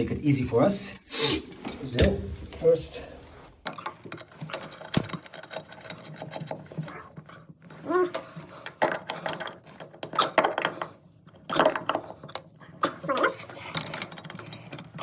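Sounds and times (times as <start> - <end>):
metallic clicks knocks and scrapes: 3.6 - 15.0.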